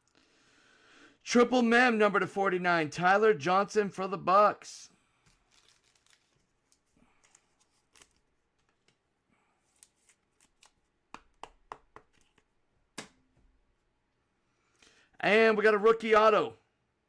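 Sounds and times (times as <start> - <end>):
cards sliding and shuffling: 5.2 - 9.0, 9.6 - 13.2.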